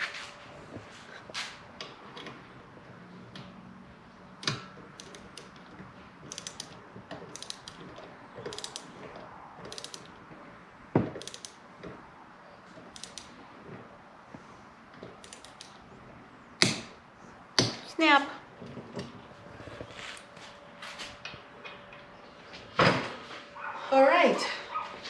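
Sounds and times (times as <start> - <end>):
ratchet wrench clicking: 4.4 - 5.6, 6.3 - 7.8, 8.5 - 8.9, 9.7 - 10.1, 11.2 - 11.6, 12.9 - 13.3, 15.2 - 15.8.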